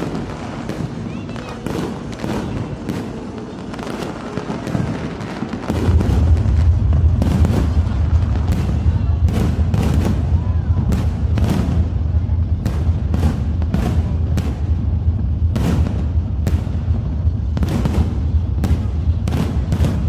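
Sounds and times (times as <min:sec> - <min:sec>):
fireworks bangs: 0:00.0 - 0:20.0
deep rumble: 0:05.6 - 0:20.0.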